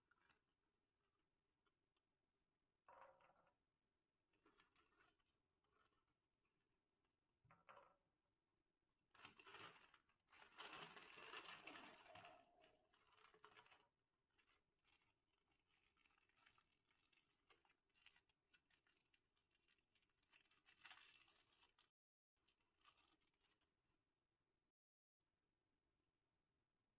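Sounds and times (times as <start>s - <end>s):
plastic packet crinkling and tearing: 9.2s - 23.7s.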